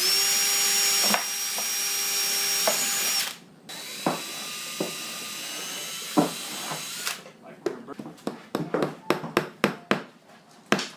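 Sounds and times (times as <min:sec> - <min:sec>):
electric power tool whining: 0:00.0 - 0:07.2.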